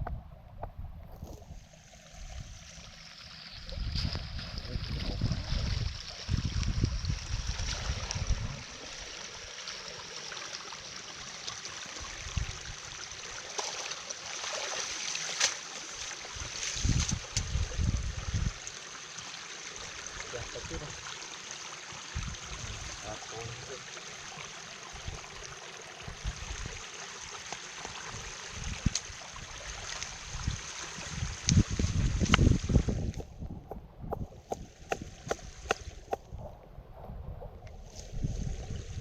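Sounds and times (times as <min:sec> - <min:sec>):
water running and trickling: 0:01.6 - 0:36.4
low rumbling bumps: 0:32.0 - 0:38.6.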